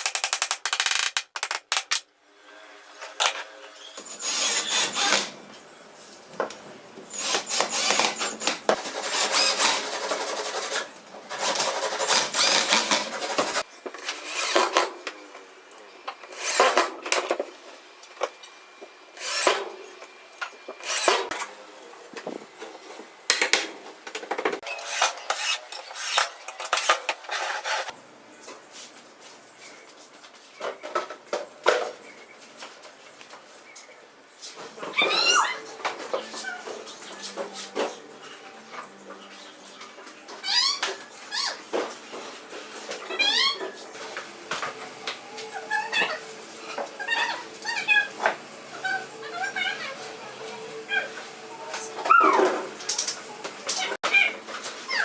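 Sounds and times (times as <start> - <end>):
scraping strokes on wood: 16.2 - 17.0, 19.2 - 19.7, 20.8 - 21.4, 24.6 - 27.9.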